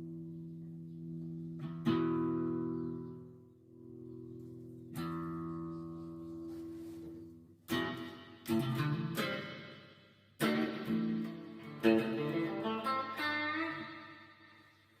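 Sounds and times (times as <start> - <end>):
electric guitar with reverb: 7.7 - 15.0.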